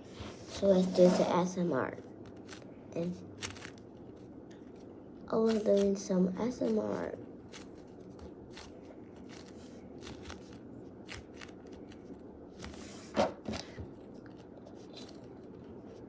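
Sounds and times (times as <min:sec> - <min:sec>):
squishy toy crackling and crinkling: 0:02.1 - 0:12.7, 0:14.0 - 0:16.0.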